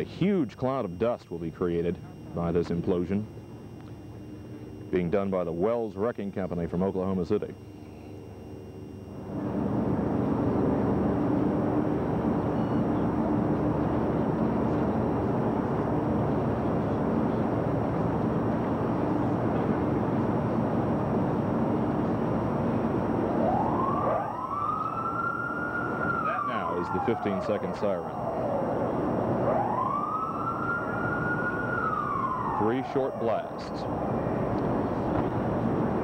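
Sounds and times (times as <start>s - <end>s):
warning siren winding up: 22.9s - 35.0s
loud steady rushing noise: 25.6s - 36.0s.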